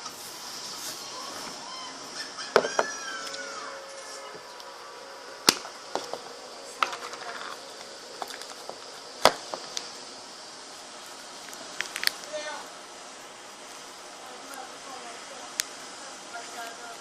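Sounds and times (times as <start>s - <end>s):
faint steady hiss: 3.1s - 17.0s.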